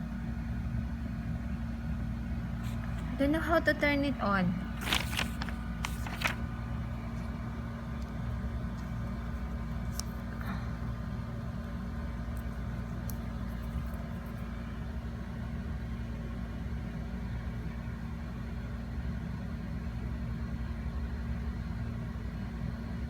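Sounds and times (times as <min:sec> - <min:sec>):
low background hum: 0:00.0 - 0:23.0.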